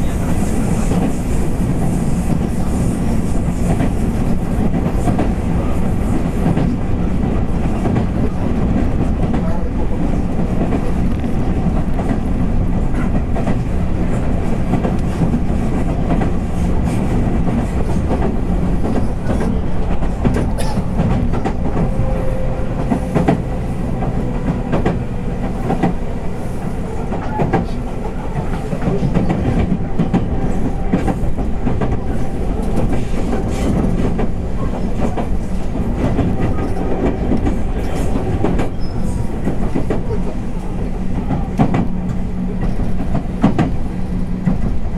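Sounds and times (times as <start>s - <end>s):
train wheels rumbling on rail: 0.0s - 44.9s
wheels clicking over rail joints: 12.9s - 44.8s.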